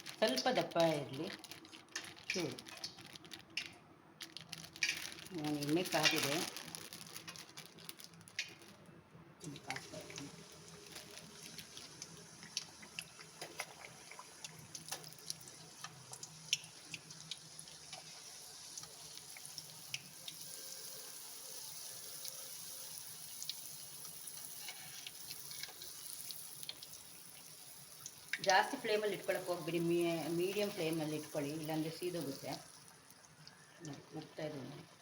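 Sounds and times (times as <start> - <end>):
dough frying in oil sizzling: 0.0 - 7.4, 9.4 - 35.0
oil pops and crackles: 0.0 - 8.8, 9.4 - 20.4.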